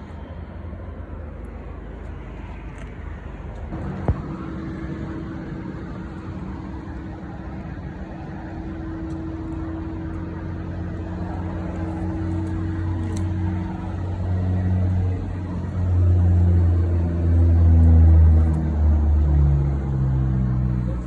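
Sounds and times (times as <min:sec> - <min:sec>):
droning tone: 0:00.0 - 0:21.0
low mechanical hum: 0:00.0 - 0:21.0.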